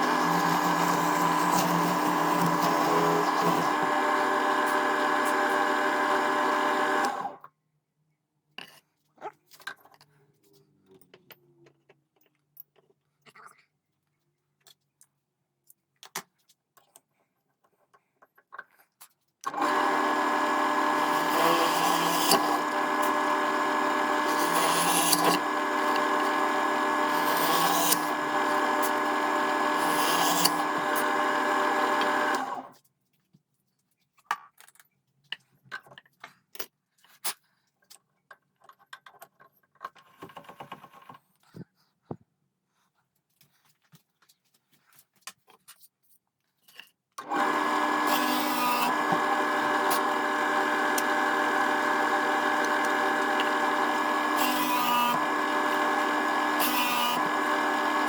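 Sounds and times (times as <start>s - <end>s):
electric drill running: 0.0s - 7.4s, 19.5s - 32.7s, 47.2s - 58.0s.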